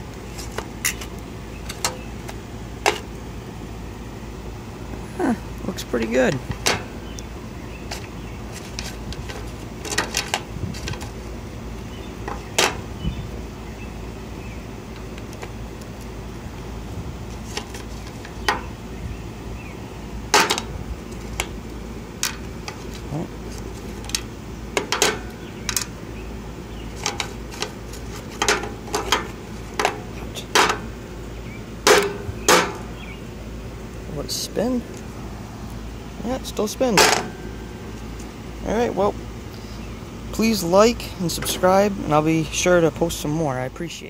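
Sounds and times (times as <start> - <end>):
steady low hum: 0.0 - 44.0
sharp clicks and scrapes: 17.3 - 18.6, 26.9 - 30.8.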